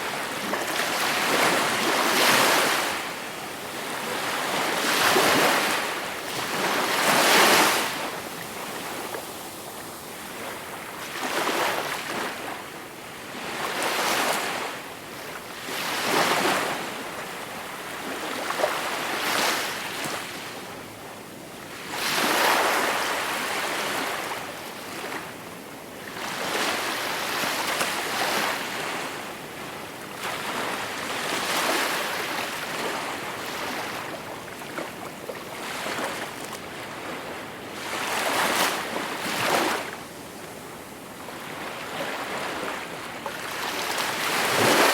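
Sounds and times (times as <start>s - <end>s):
sea waves breaking: 43.6s - 44.9s.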